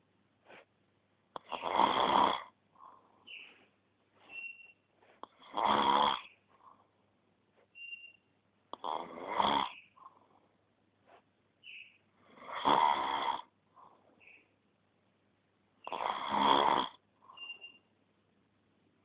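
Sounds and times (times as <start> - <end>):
soft breaths: 0.4 - 0.8, 2.4 - 7.8, 8.7 - 14.6
loud rattling snoring: 1.4 - 2.5, 5.4 - 6.3, 8.8 - 9.8, 12.3 - 13.5, 15.8 - 17.0.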